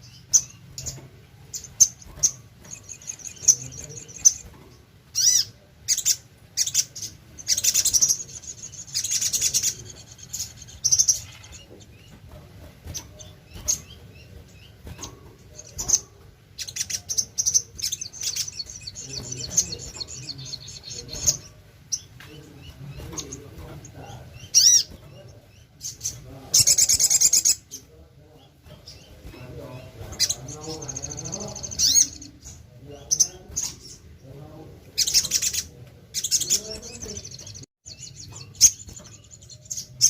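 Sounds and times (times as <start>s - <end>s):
bird trilled chirps: 0.0s - 4.5s, 5.2s - 12.1s, 12.9s - 27.8s, 28.4s - 34.0s.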